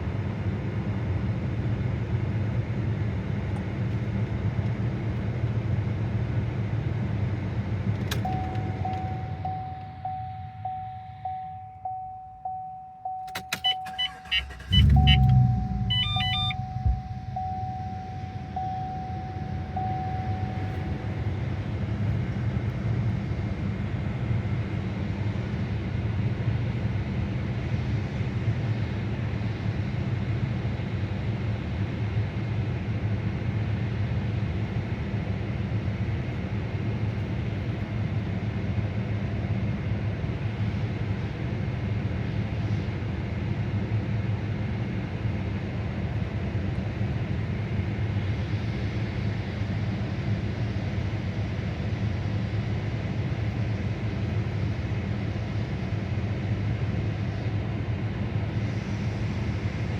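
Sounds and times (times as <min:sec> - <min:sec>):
car engine idling: 0:08.1 - 0:24.3
clicks and beeps: 0:08.2 - 0:21.0
car warning chime dinging: 0:08.2 - 0:21.2.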